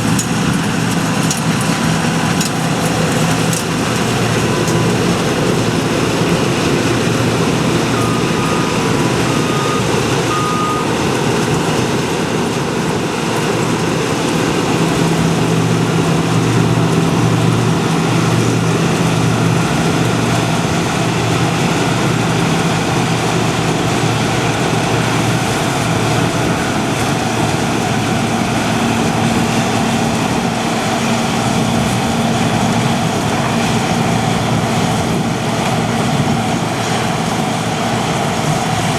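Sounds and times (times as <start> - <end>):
diesel machinery engine running: 0.0 - 38.9
short electronic beeps: 7.6 - 11.0.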